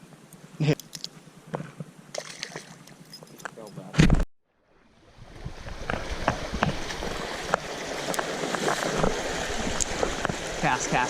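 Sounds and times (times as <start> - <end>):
small ticks and splashes: 2.1 - 3.2
stream water rushing: 4.9 - 11.0.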